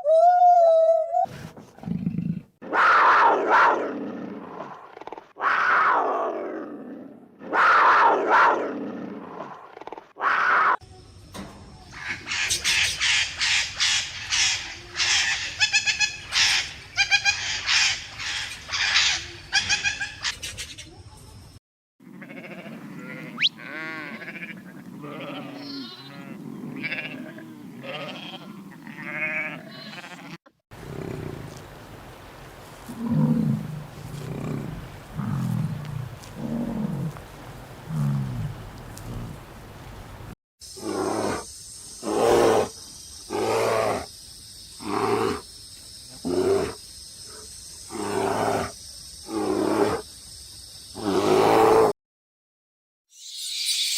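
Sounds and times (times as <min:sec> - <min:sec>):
wavering bleat-like calls: 0:22.0 - 0:30.4
harsh high animal calls: 0:22.2 - 0:30.4
deep animal calls: 0:22.2 - 0:31.6.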